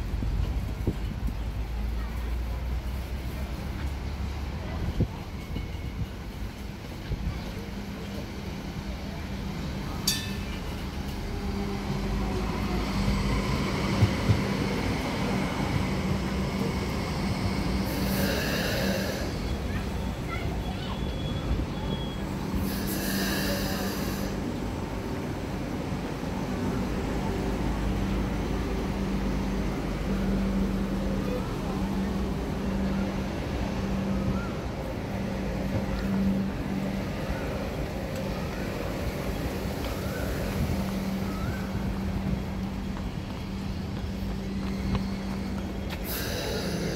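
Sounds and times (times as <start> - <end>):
light rail train hum and rumble: 0.0 - 46.9
hiss: 17.8 - 19.5, 22.6 - 24.4, 46.0 - 46.9.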